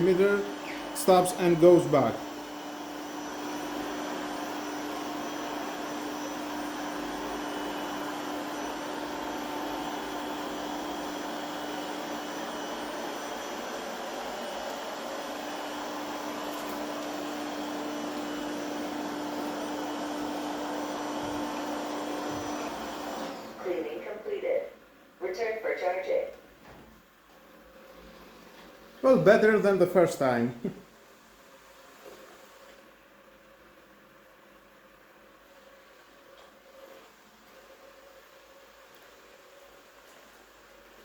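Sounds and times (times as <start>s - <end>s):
robot vacuum cleaner humming: 0.0s - 24.6s.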